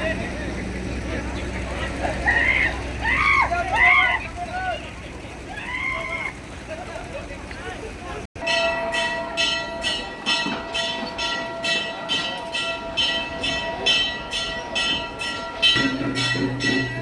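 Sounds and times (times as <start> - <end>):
metal bells struck rhythmically: 8.4 - 17.0.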